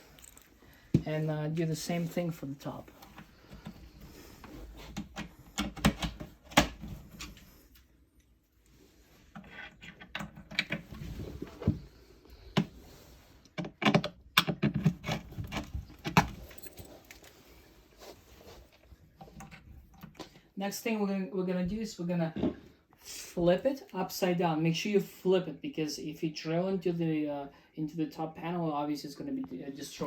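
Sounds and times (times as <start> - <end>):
metal fittings clinking and rattling: 0.0 - 0.6, 16.1 - 17.4.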